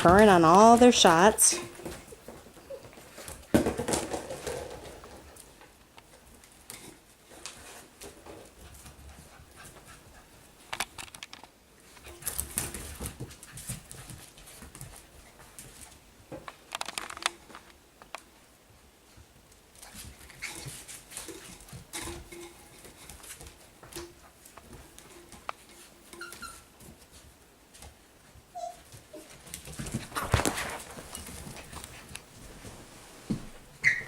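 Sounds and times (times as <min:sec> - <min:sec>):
puppies scuffling clicks: 0:00.1 - 0:18.3, 0:28.8 - 0:32.5.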